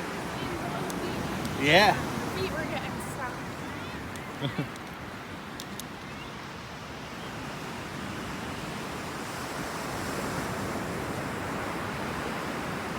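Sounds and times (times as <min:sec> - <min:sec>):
ocean surf washing in: 0:00.0 - 0:03.6.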